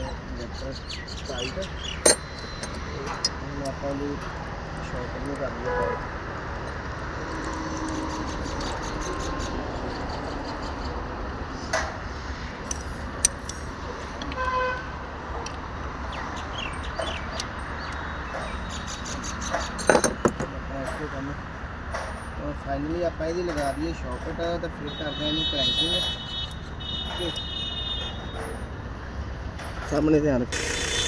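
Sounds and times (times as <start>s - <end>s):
road traffic noise: 0.0s - 31.0s
vehicle horn toot: 5.6s - 6.1s, 14.3s - 14.9s, 24.8s - 28.4s.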